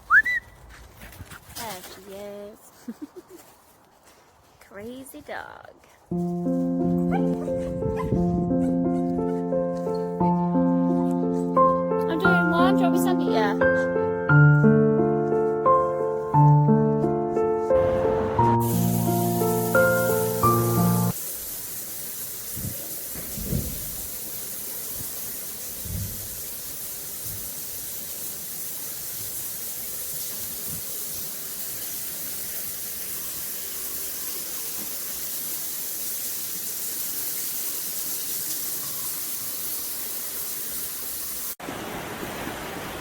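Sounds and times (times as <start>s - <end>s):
background music: 6.2s - 21.1s
rushing water: 17.8s - 43.0s.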